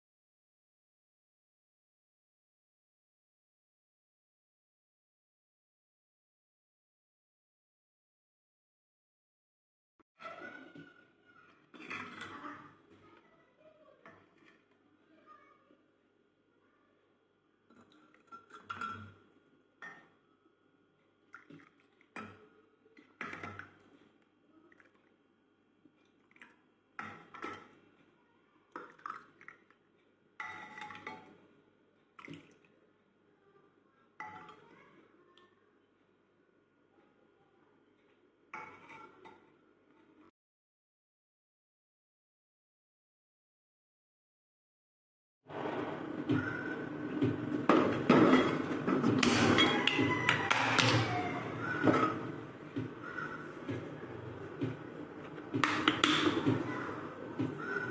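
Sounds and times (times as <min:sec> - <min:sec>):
dishes and utensils clinking: 0:46.2 - 0:53.8, 0:54.6 - 0:57.9
utensils tapping a pan: 0:55.5 - 0:56.8.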